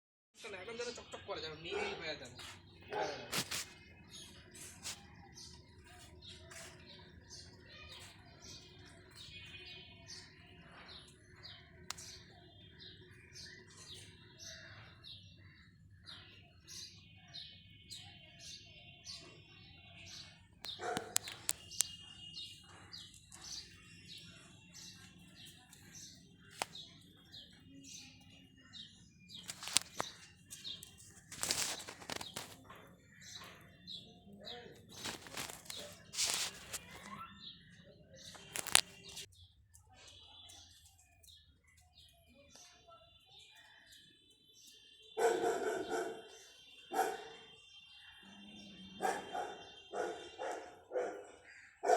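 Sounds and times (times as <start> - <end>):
small birds chirping: 0.4 - 51.9
sharp clicks: 20.6 - 21.9.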